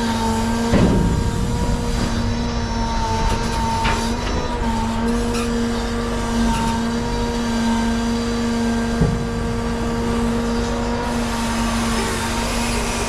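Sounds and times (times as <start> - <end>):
machine engine running: 0.0 - 13.0.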